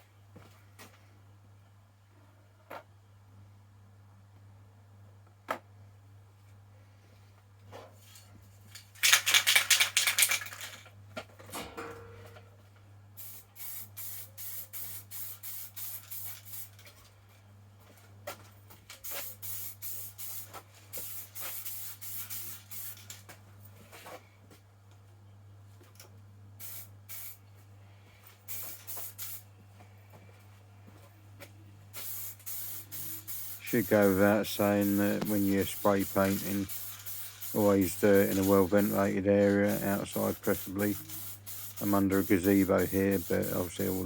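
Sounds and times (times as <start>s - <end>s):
spray paint can hissing: 9.0s - 10.8s, 13.2s - 16.9s, 19.0s - 23.2s, 26.6s - 27.4s, 28.5s - 29.4s, 31.9s - 44.0s.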